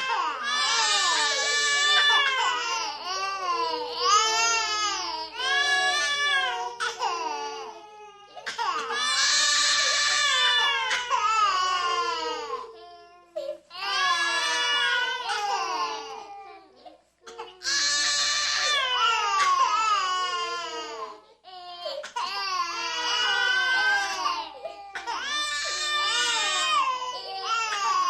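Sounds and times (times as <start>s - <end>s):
infants crying and wailing: 0.0s - 28.0s.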